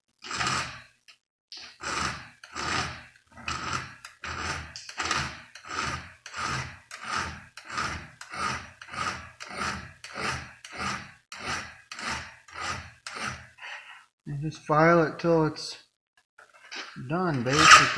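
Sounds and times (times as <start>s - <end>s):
file rasping on chainsaw chain: 0.2s - 0.8s, 1.8s - 13.6s, 17.2s - 17.9s.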